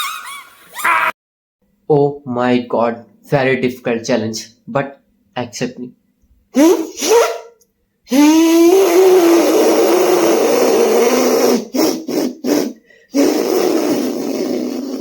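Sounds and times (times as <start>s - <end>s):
beatboxer buzzing whirr: 6.6s - 7.4s, 8.1s - 15.0s.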